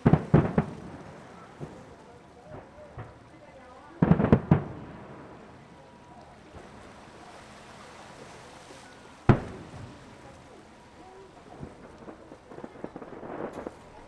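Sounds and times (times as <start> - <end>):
firework bang: 0.0 - 3.2, 4.0 - 5.4, 9.3 - 10.2, 11.5 - 14.0
steady background hiss: 0.0 - 14.0.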